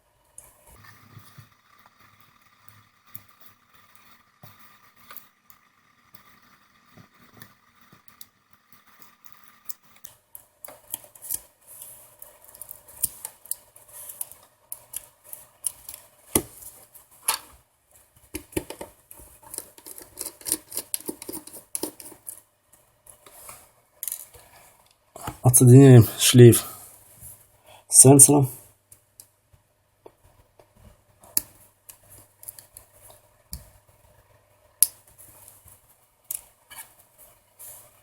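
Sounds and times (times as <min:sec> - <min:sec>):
hand tools clicking on small metal parts: 0:19.5 - 0:22.4.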